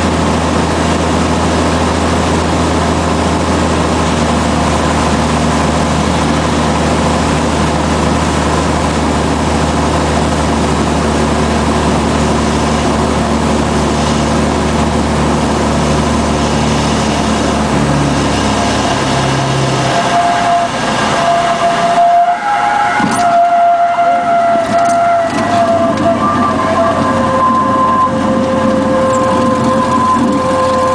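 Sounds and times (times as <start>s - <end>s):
airplane engine and propeller: 0.0s - 30.9s
steady high-pitched tone: 11.1s - 30.9s.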